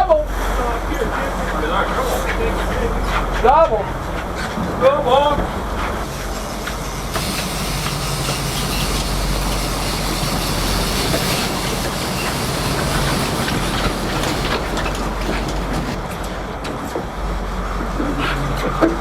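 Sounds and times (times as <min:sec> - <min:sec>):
boat engine: 0:00.0 - 0:19.0
wind: 0:00.0 - 0:19.0
water rushing: 0:06.1 - 0:16.0.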